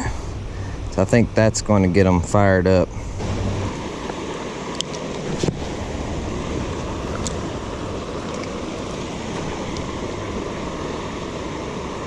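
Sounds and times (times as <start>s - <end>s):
creek water rushing: 0.0s - 12.0s.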